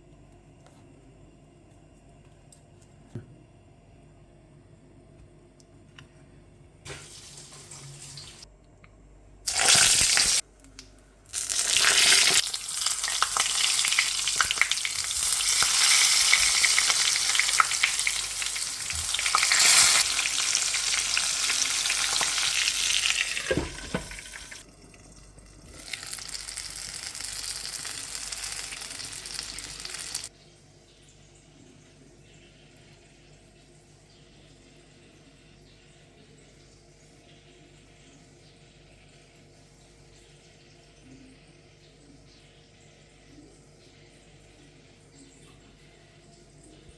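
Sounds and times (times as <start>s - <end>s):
food sizzling in hot oil: 6.9s - 8.4s, 9.5s - 10.4s, 11.3s - 30.3s.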